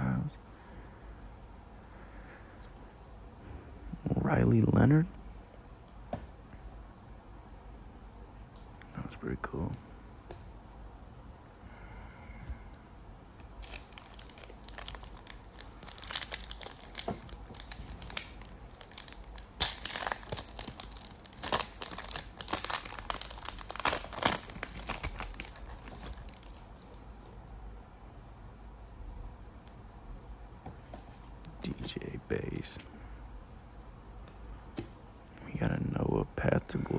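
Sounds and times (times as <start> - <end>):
foil wrapper crinkling: 13.4 - 27.2.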